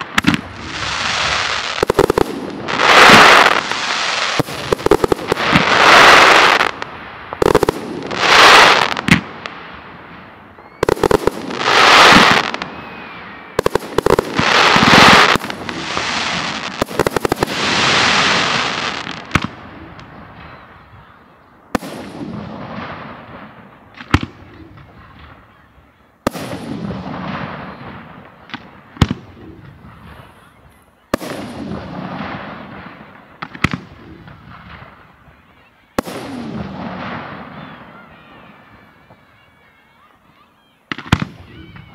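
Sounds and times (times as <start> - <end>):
firework shells booming: 0.0 - 20.6
sharp firework cracks: 0.0 - 20.6, 21.7 - 25.4, 26.2 - 30.3, 31.1 - 35.2, 36.0 - 37.8
firework rumble: 0.0 - 21.1.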